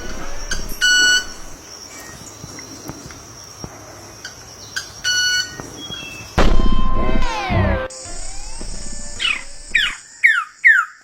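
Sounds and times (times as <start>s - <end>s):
bird beep-like calls: 0.0s - 1.6s, 7.3s - 10.8s.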